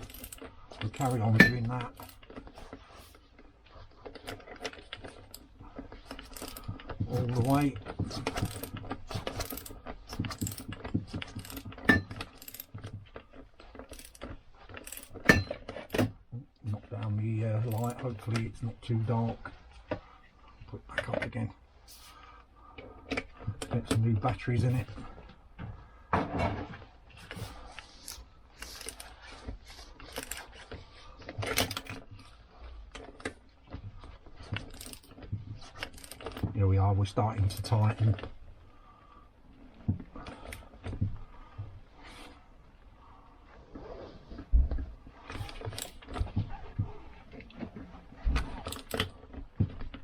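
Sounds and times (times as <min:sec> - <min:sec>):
hand tools clattering: 0:00.0 - 0:02.2, 0:06.1 - 0:12.9, 0:14.8 - 0:16.1
metal parts and tools clinking: 0:00.0 - 0:03.1, 0:04.0 - 0:16.2, 0:17.6 - 0:18.4, 0:27.2 - 0:30.8, 0:31.4 - 0:32.1, 0:34.4 - 0:36.5, 0:48.5 - 0:49.1.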